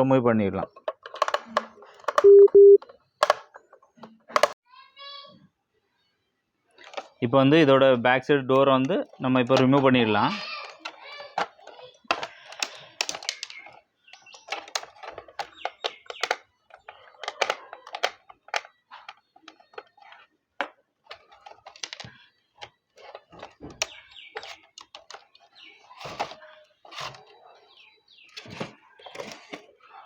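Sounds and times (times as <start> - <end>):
plastic cover clicking and clacking: 0.6 - 2.3, 2.9 - 4.6, 6.8 - 7.2, 10.6 - 27.4, 28.3 - 29.8.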